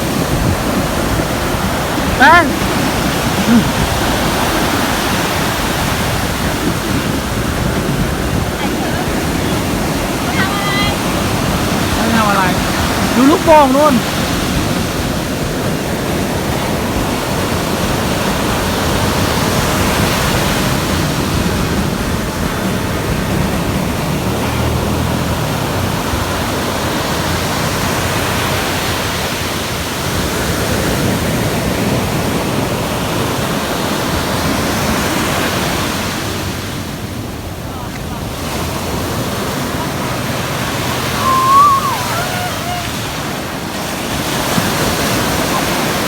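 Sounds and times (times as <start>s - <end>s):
sea surf breaking: 0.0s - 46.0s.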